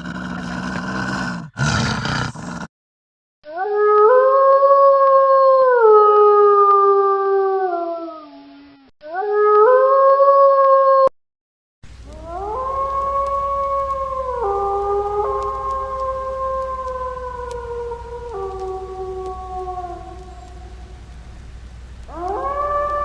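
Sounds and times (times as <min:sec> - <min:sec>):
wolf howling: 0:03.5 - 0:11.1, 0:12.0 - 0:21.3, 0:22.0 - 0:23.0
low hum: 0:11.9 - 0:23.0.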